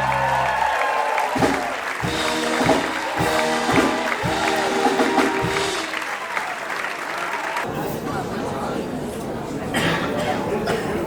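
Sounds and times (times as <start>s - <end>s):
instrumental dance music: 1.4s - 6.0s.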